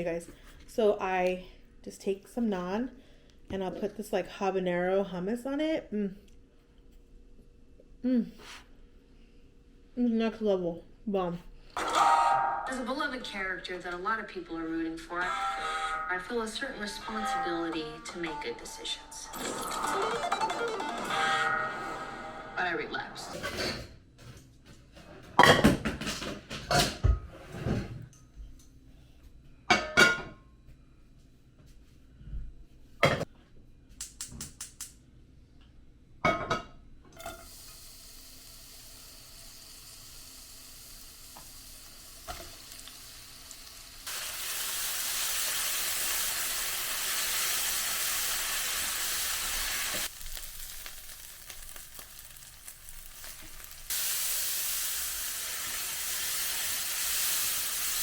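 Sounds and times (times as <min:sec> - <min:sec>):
dishes and utensils clattering: 0:25.0 - 0:28.1
food sizzling in a pan: 0:37.2 - 0:58.0.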